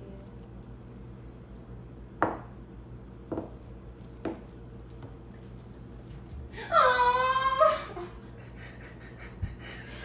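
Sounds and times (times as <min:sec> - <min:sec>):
toy bells clinking: 0:00.0 - 0:07.0.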